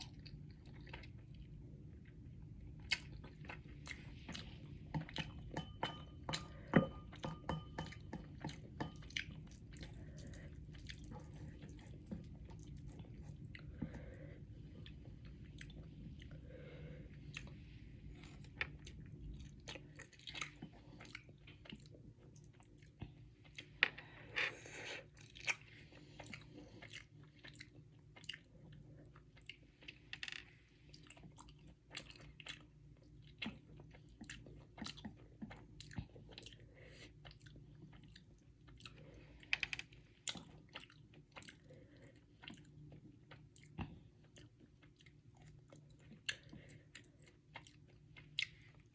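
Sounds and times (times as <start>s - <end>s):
person chewing noodles: 0.0s - 48.9s.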